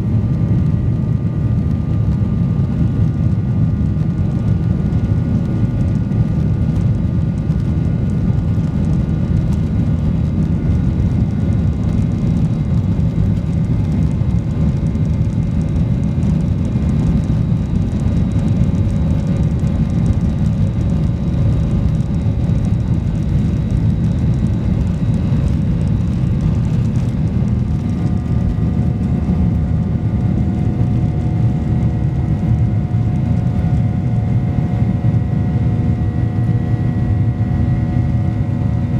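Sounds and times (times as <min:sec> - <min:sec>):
jet engines rumbling in cabin: 0:00.0 - 0:38.9
jet engine whining tones: 0:07.9 - 0:38.9.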